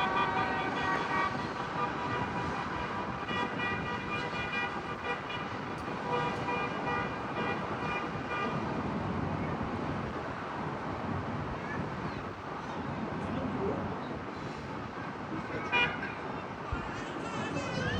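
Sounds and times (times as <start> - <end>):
car horn honking: 0.0 - 8.6
traffic noise: 0.0 - 17.9.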